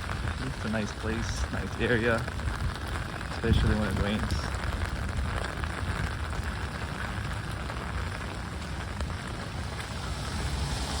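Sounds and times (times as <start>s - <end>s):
rain pattering: 0.0s - 11.0s
deep rumble: 4.6s - 11.0s.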